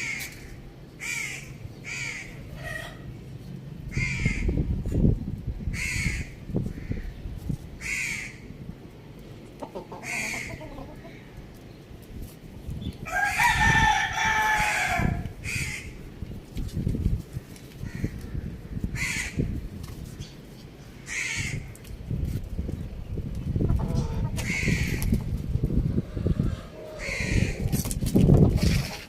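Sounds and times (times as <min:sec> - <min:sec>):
rooster crowing: 0:13.1 - 0:15.3.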